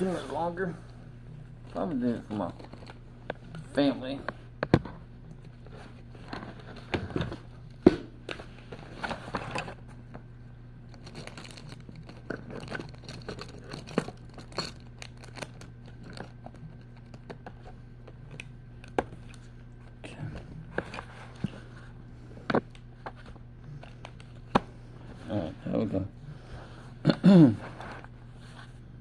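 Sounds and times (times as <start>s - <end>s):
steady low hum: 0.0s - 29.0s
paper rustling and crinkling: 10.9s - 17.5s.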